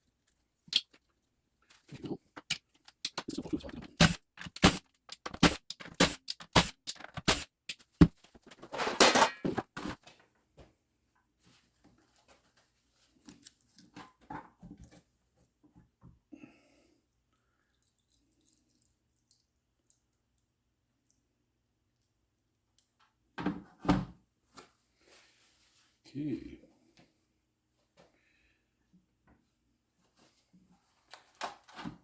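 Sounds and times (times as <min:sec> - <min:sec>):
metal parts and tools clinking: 0:02.4 - 0:07.8
scraping and rustling: 0:08.3 - 0:10.1.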